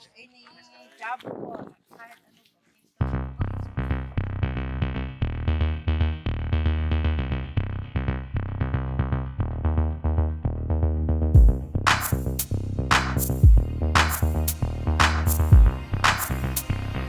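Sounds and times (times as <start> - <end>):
electronic music: 9.2 - 17.0.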